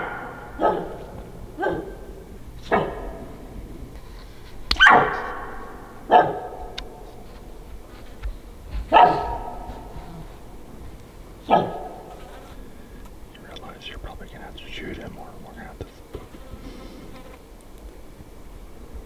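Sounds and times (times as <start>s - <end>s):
elk alarm barks: 0.0s - 7.9s, 8.8s - 16.1s.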